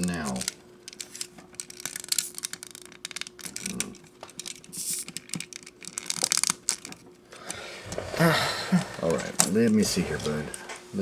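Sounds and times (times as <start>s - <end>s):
plastic parts clicking: 0.0s - 8.1s.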